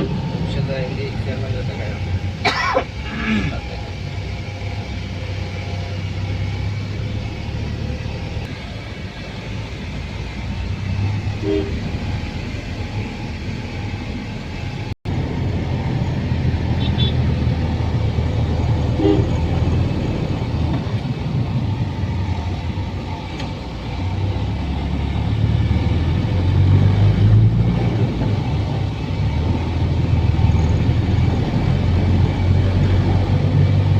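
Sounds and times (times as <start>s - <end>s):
vehicle engine rumble: 0.0s - 33.9s
horn toots: 11.4s - 12.0s, 16.8s - 17.2s, 18.9s - 19.6s.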